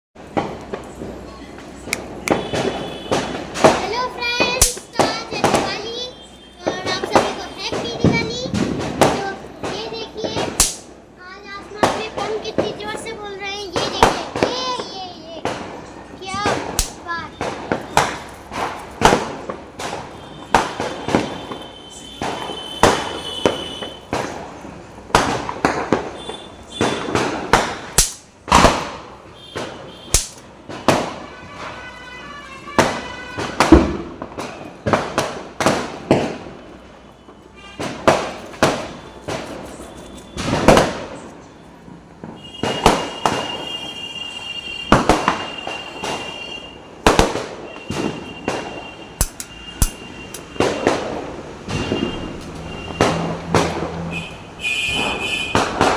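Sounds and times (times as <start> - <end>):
firecrackers banging: 0.2 - 55.9.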